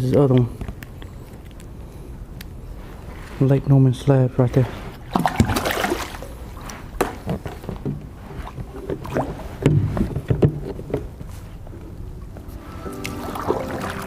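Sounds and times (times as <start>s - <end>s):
knocks and clatter on kayak: 8.9s - 11.2s.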